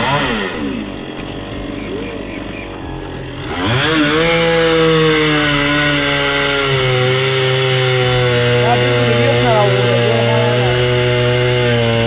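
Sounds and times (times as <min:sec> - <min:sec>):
chainsaw engine revving: 0:00.0 - 0:12.0.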